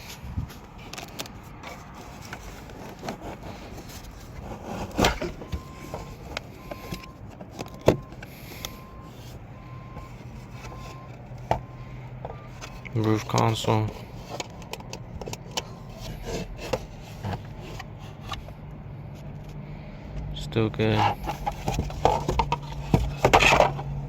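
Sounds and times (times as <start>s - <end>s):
knocks and clicks of car parts: 4.3s - 9.0s, 9.8s - 15.8s, 21.0s - 24.0s.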